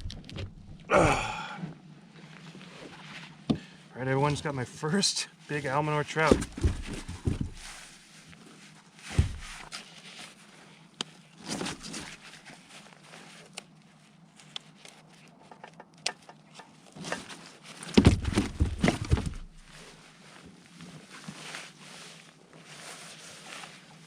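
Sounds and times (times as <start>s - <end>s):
heavy bumps and scraping: 6.2s - 7.9s, 9.1s - 9.7s, 17.9s - 19.8s
rustling: 6.3s - 15.4s, 16.8s - 24.0s
clicks and knocks in kayak: 17.9s - 19.6s.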